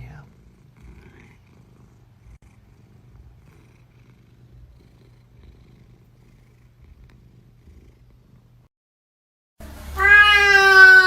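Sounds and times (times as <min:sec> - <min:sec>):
cat purring: 0:00.0 - 0:08.7.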